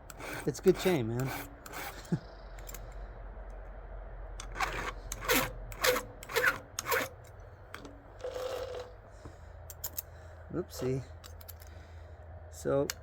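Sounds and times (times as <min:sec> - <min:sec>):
file rasping on chainsaw chain: 0:00.1 - 0:02.1, 0:04.6 - 0:07.1.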